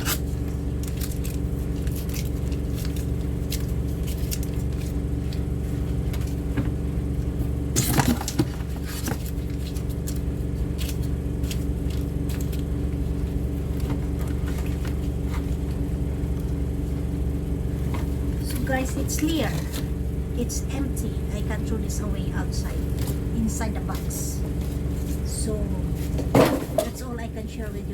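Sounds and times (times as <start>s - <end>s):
cat food packaging rustling: 0.0s - 6.6s, 7.8s - 15.8s
washing machine humming: 0.0s - 27.9s.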